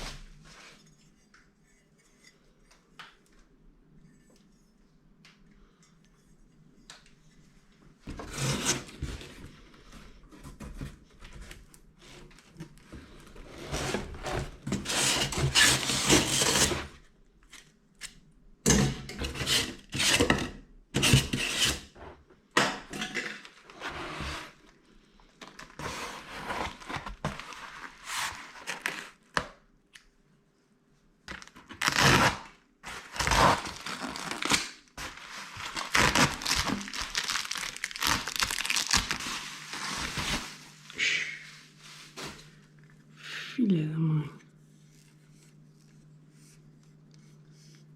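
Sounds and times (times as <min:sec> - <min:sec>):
packaging rustling and scraping: 0:08.0 - 0:17.6, 0:25.4 - 0:29.4, 0:31.3 - 0:42.8.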